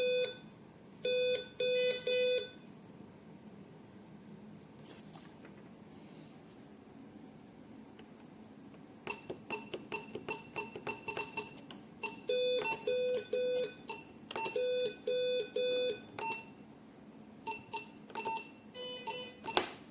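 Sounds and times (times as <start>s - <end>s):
patient monitor alarm beeps: 0.0s - 2.8s, 9.1s - 16.7s, 17.4s - 19.7s.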